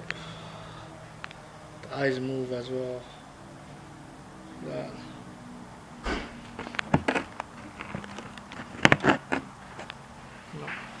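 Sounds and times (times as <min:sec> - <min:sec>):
plastic toy cars clacking: 0:06.0 - 0:10.0.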